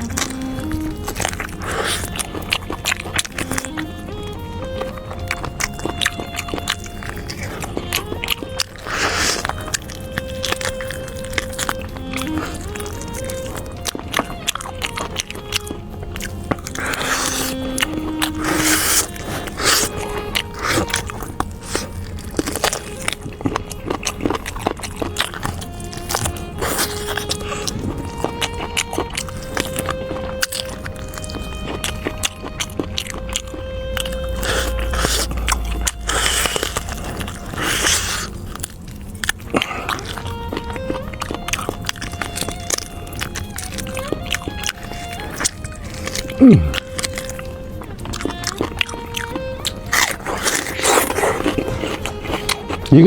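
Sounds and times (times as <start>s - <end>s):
background music: 0.0s - 53.0s
person chewing meat: 0.0s - 53.0s
wet slurps: 1.1s - 3.8s, 5.4s - 11.5s, 16.2s - 29.7s, 32.0s - 40.3s, 44.6s - 47.3s.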